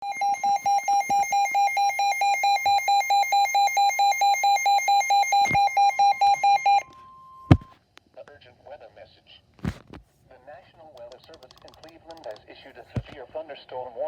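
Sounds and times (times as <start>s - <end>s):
rapid pulsing alarm beeps: 0.0s - 7.7s
click: 11.0s - 12.4s.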